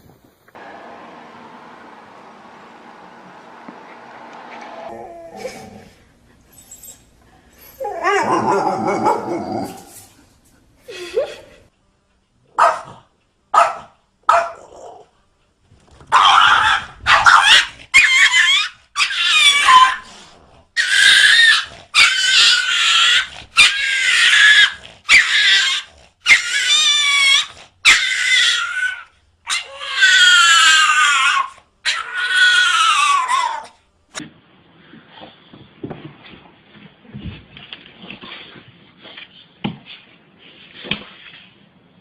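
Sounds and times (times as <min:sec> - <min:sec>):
dog yipping: 0:12.6 - 0:13.0, 0:13.6 - 0:14.6, 0:16.1 - 0:20.0, 0:20.8 - 0:33.8
dog howling: 0:20.8 - 0:33.8.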